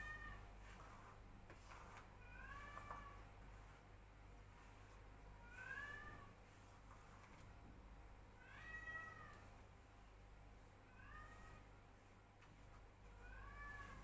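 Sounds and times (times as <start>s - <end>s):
cat meowing faintly: 10.9s - 11.7s, 13.1s - 14.0s.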